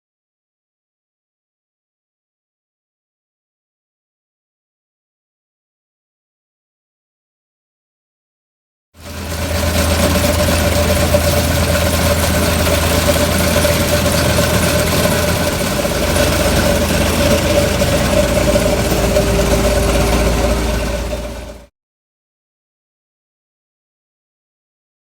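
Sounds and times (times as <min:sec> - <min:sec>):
floor milling machine running: 0:09.0 - 0:21.7.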